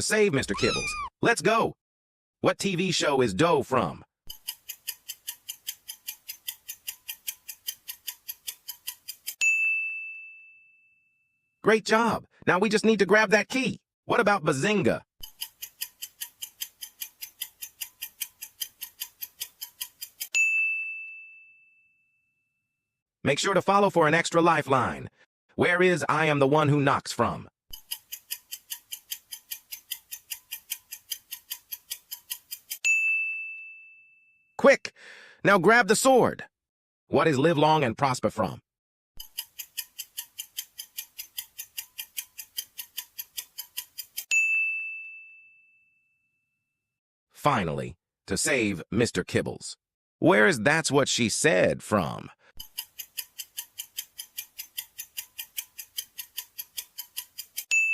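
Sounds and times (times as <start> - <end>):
rapid clock ticks: 4.3 - 9.4, 15.2 - 20.4, 27.7 - 32.8, 39.2 - 44.3, 52.6 - 57.8
bell ding: 9.4 - 11.1, 20.4 - 22.1, 32.9 - 34.3, 44.3 - 46.1
countdown timer ticking: 52.6 - 57.9.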